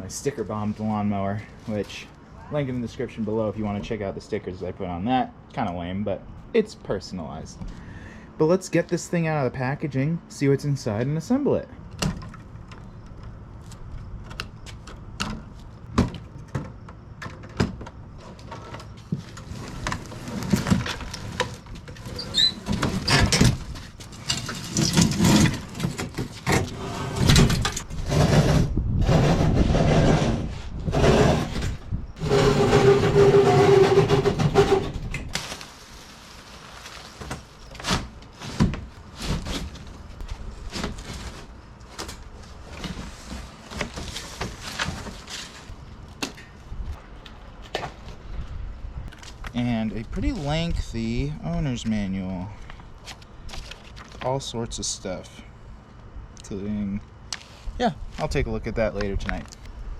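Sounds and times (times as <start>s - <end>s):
cardboard and plastic rustling: 18.2s - 28.7s, 32.5s - 48.4s, 52.6s - 54.5s.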